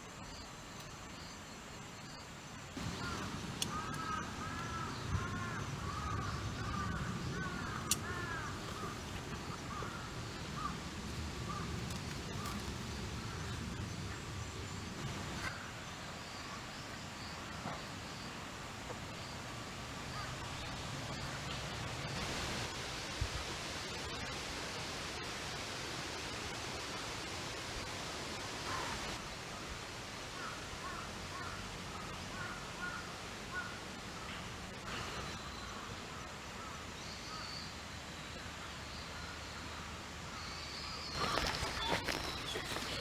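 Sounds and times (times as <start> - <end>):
outdoor ambient hiss: 0.0 - 43.0
birds calling: 2.8 - 15.8, 40.4 - 43.0.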